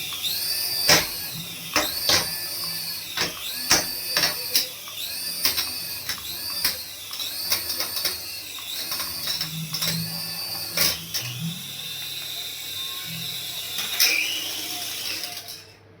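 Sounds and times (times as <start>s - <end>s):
toy helicopter motor whining: 0.0s - 15.8s.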